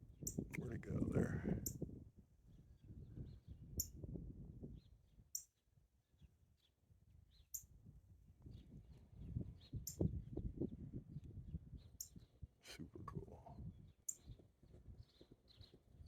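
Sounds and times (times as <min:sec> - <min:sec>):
small birds chirping: 0:00.0 - 0:16.0
low microphone rumble: 0:12.7 - 0:14.0.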